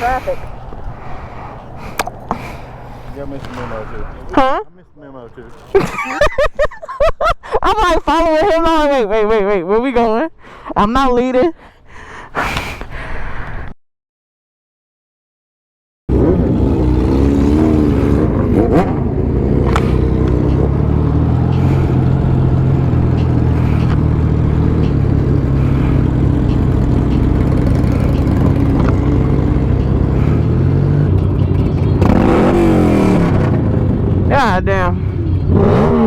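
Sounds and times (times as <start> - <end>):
road noise: 0.0 - 9.0, 16.1 - 36.0
motorcycle engine running: 16.1 - 36.0.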